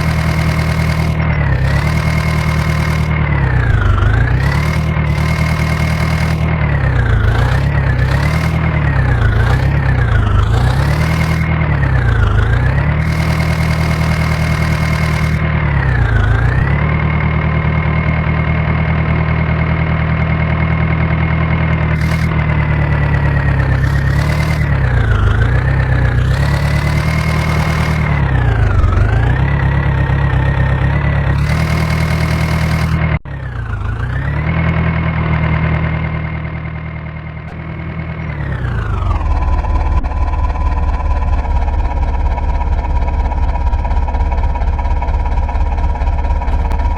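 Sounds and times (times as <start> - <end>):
diesel engine revving: 0.0 - 46.9.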